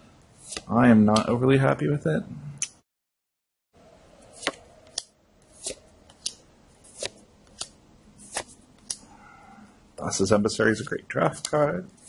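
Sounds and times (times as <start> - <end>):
playing cards snapping: 4.4 - 9.0.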